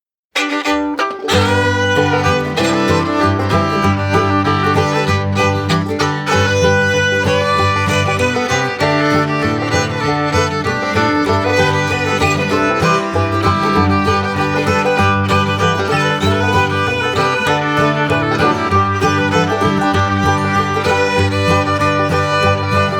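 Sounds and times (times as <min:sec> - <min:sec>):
fiddle: 0:00.3 - 0:22.9
banjo: 0:00.4 - 0:22.9
guitar: 0:00.4 - 0:22.9.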